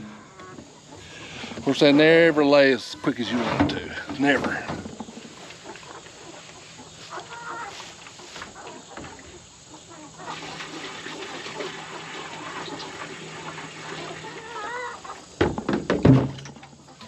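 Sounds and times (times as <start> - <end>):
hens clucking: 0.0 - 15.4.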